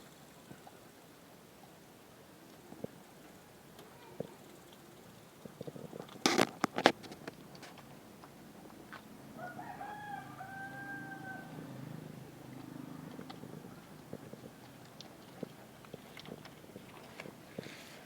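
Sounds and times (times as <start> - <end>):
drawn-out two-part animal call: 9.4 - 13.9.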